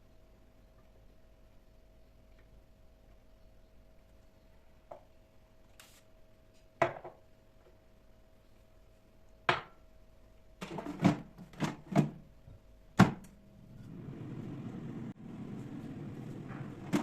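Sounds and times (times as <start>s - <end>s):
faint steady hum: 12.2s - 17.0s.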